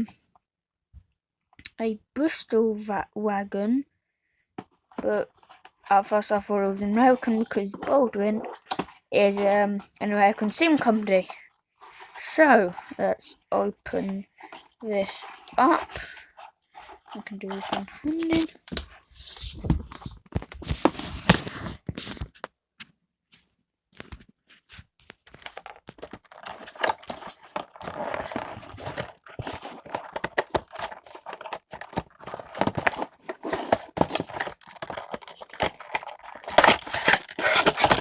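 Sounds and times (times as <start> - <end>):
packaging crinkling and tearing: 25.0 - 38.0.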